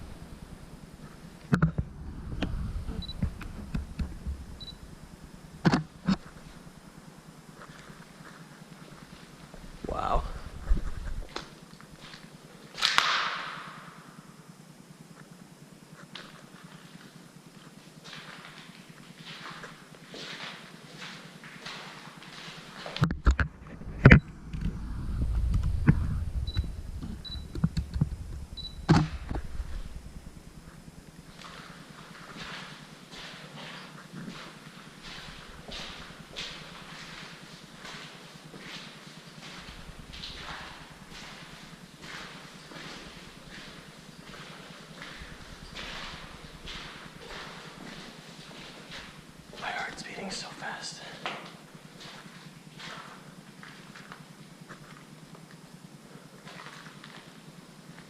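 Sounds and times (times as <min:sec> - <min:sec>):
low rumble: 0:01.8 - 0:05.4, 0:23.6 - 0:31.0
short high autofocus beeps: 0:04.6 - 0:04.8, 0:28.6 - 0:28.9.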